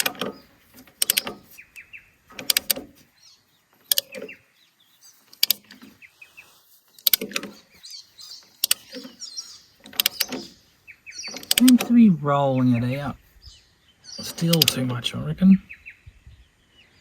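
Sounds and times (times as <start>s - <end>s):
metallic clicks and knocks: 0.0s - 1.6s, 2.3s - 3.1s, 3.8s - 4.4s, 5.3s - 6.0s, 7.0s - 7.6s, 8.6s - 10.6s, 11.2s - 12.0s.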